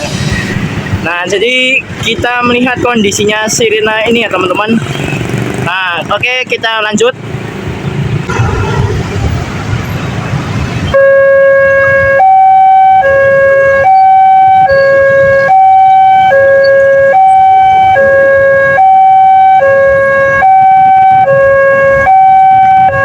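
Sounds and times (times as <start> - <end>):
level crossing two-tone siren: 10.9 - 23.0.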